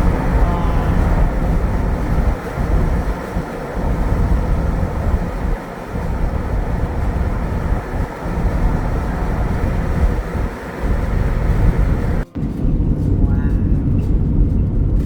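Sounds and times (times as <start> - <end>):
vehicle road and engine rumble: 0.0 - 15.0.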